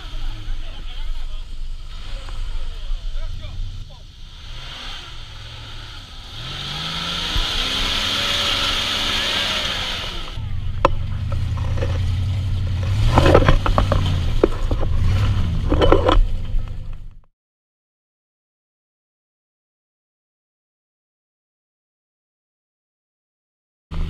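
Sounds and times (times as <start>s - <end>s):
vehicle engine revving: 0.0s - 17.3s.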